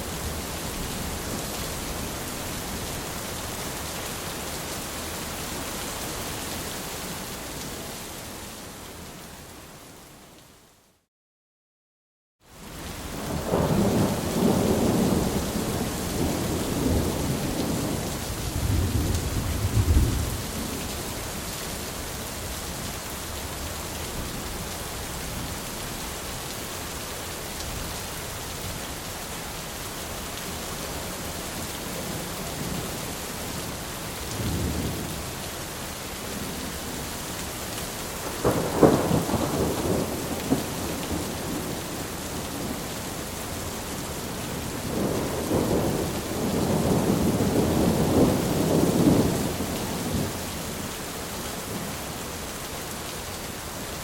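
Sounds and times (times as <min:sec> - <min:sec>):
rain hiss: 0:12.5 - 0:54.0
rolling thunder: 0:13.3 - 0:20.5, 0:38.2 - 0:42.7, 0:44.8 - 0:50.3.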